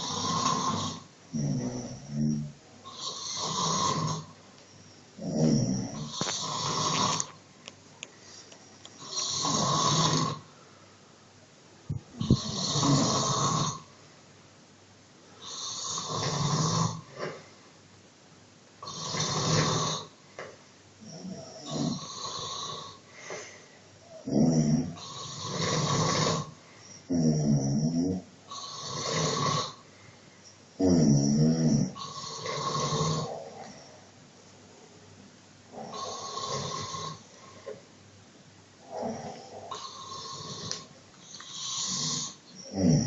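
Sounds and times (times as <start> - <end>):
man snoring loudly: 0.0 - 4.4, 5.2 - 7.3, 9.0 - 10.5, 12.2 - 13.9, 15.4 - 17.3, 18.8 - 20.1, 21.0 - 23.0, 24.2 - 29.8, 30.8 - 33.7, 35.7 - 37.3, 38.9 - 43.0.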